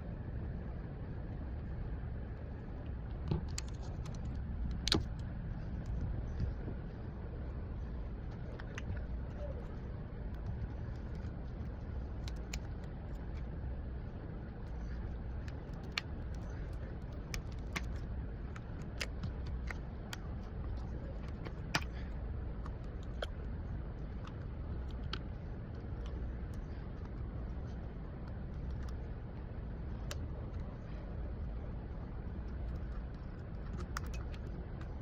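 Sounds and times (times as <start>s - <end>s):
steady low rumble: 0.0s - 35.0s
small sharp clicks and taps: 3.3s - 6.4s, 10.3s - 13.5s, 14.7s - 23.4s, 24.0s - 29.1s, 32.5s - 35.0s.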